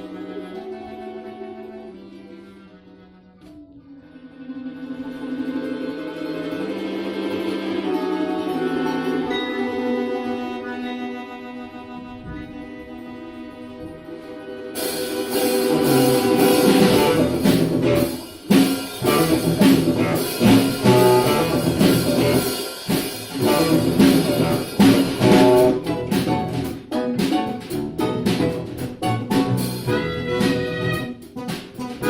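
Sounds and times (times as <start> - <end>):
upbeat instrumental ensemble: 0.0 - 32.0
drum beat: 14.8 - 32.0.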